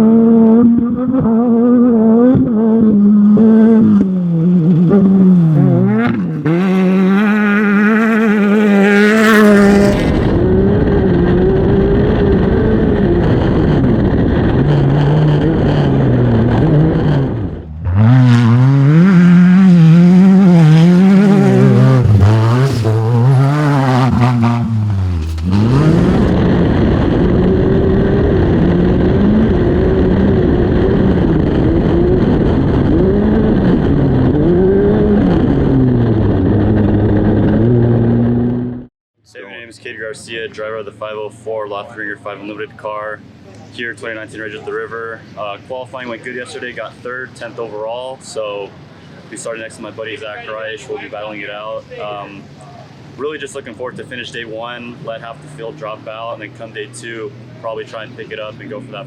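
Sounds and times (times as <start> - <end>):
race car engine revving: 0.0 - 38.9, 52.3 - 59.0.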